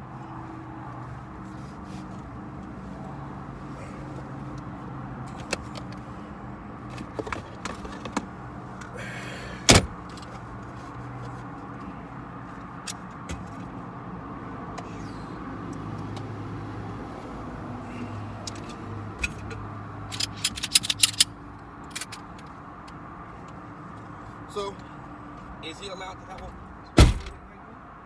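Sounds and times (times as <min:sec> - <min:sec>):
loud sharp thump: 0:27.0 - 0:27.4.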